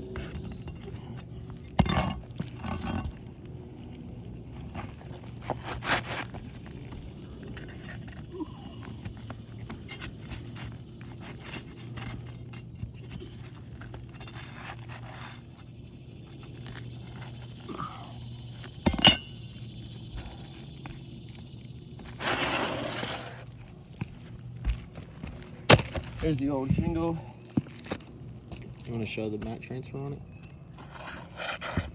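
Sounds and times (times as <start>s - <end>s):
shingle being pried loose: 0.1s - 3.3s, 24.0s - 27.0s.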